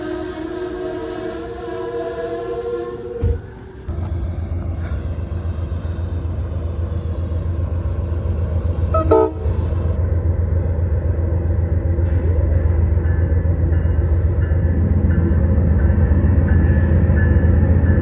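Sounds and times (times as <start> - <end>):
train rumbling past: 0.0 - 18.0
train horn toot: 8.9 - 9.6.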